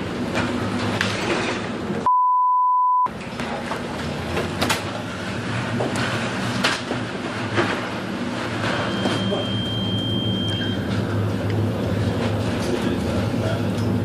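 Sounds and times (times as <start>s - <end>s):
censor bleep: 2.1s - 3.1s, 8.9s - 10.9s.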